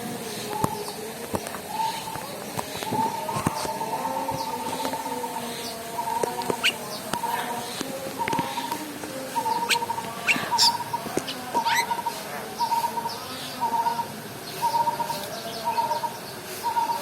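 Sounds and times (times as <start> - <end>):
sharp rising bird chirps: 9.4 - 11.9.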